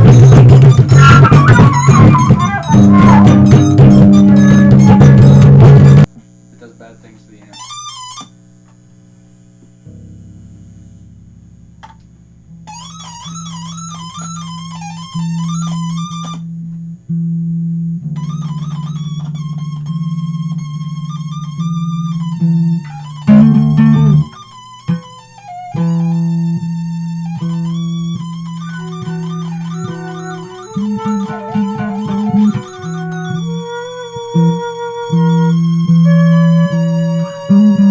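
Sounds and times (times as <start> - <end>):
low instrument holding long notes: 0.0 - 6.1, 9.9 - 16.4, 25.5 - 37.9
wavering melody with vibrato: 0.0 - 6.1, 9.9 - 16.6, 18.1 - 37.9
loud dense chord: 9.8 - 13.2.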